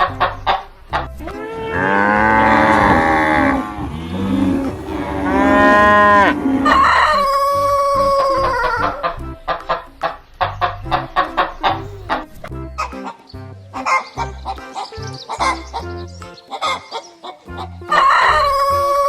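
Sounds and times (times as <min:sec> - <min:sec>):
cow mooing: 0:01.4 - 0:08.9
higher steady cow call: 0:01.5 - 0:08.9.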